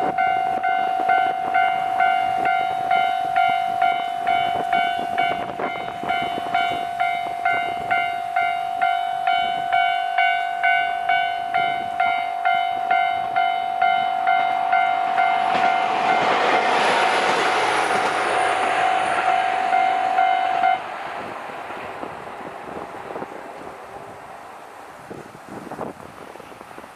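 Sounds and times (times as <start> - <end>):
level crossing bell ringing: 0.0 - 16.3
constant tone: 0.0 - 25.0
train passing: 0.0 - 26.9.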